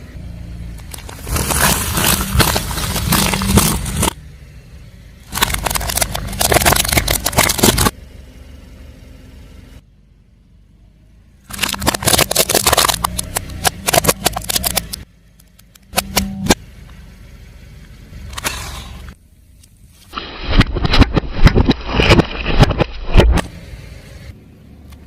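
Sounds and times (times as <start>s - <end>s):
tyre crushing brittle objects: 0.8s - 4.2s, 5.3s - 8.0s, 11.5s - 15.0s, 20.2s - 23.5s.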